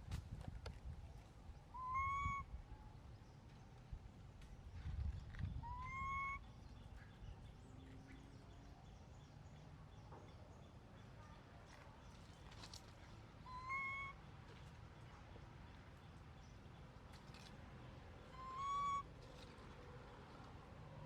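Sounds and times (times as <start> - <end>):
baby monkey whistle-like calls: 1.8 - 2.5, 13.5 - 14.2, 18.4 - 19.1.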